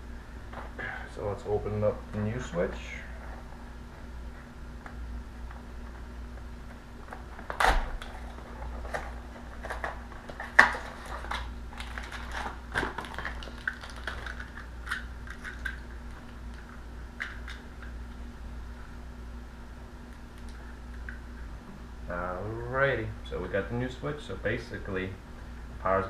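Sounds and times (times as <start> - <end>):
packaging crinkling and clicking: 7.0 - 18.0.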